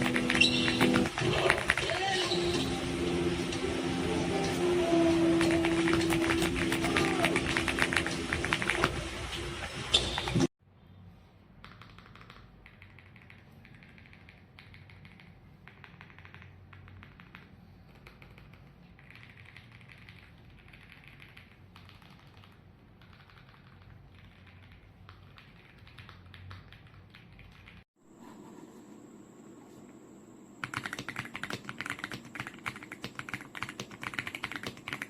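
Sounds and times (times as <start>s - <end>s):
mechanical keyboard typing: 0.0s - 2.1s, 5.4s - 9.0s, 11.6s - 27.8s, 30.6s - 35.0s.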